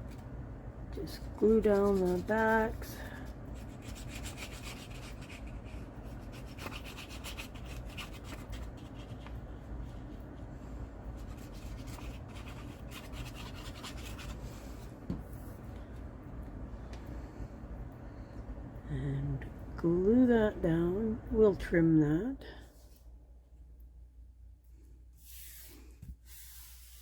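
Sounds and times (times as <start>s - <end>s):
rubbing strokes on paper: 1.4s - 10.2s, 11.2s - 14.9s, 25.2s - 27.0s.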